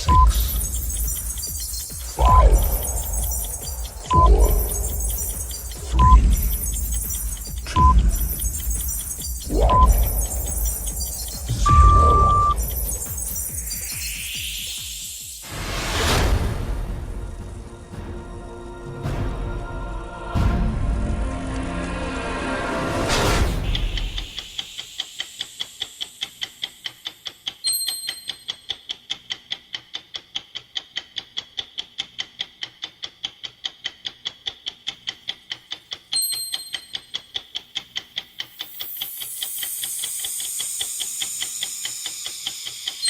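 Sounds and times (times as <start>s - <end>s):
fast clock ticks: 0.0s - 15.5s, 23.7s - 43.0s
whoosh: 0.0s - 17.6s.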